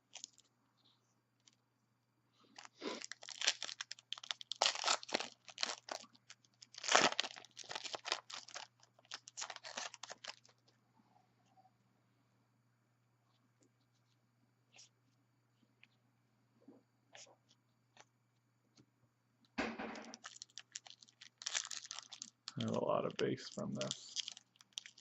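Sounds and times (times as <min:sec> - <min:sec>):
wrapper tearing and crinkling: 0:02.6 - 0:10.6, 0:20.1 - 0:25.0.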